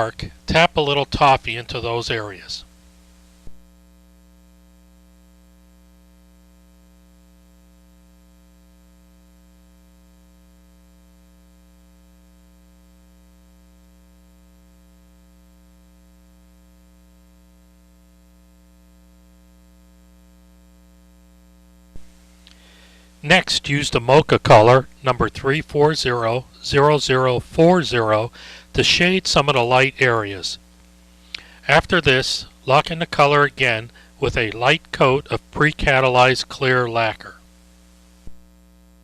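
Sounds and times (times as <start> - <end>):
electrical mains hum: 0.0 - 39.0
faint hiss: 22.0 - 38.4.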